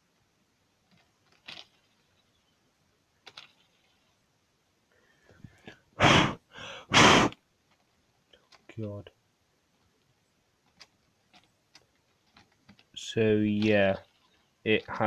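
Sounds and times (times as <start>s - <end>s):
plastic clicks: 0.8s - 2.0s, 3.2s - 4.0s, 9.8s - 15.0s.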